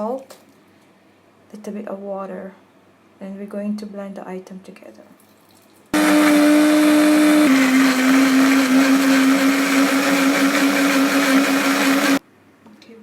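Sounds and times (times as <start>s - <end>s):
electric blender running: 6.0s - 12.2s.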